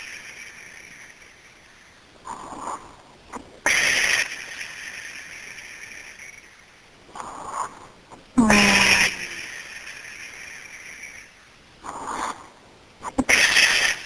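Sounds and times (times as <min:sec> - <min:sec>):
person sniffing: 0:08.4 - 0:09.5.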